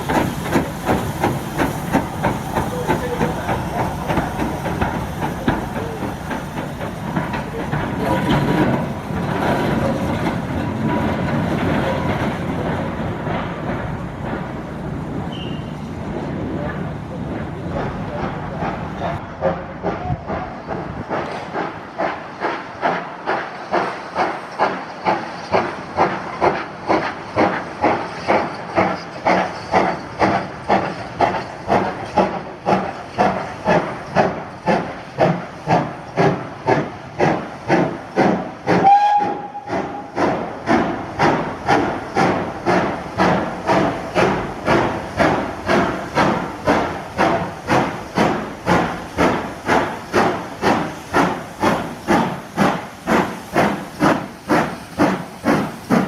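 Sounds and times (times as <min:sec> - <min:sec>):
steam locomotive chuffing: 0:00.0 - 0:56.0
train whistle blast: 0:38.8 - 0:40.0.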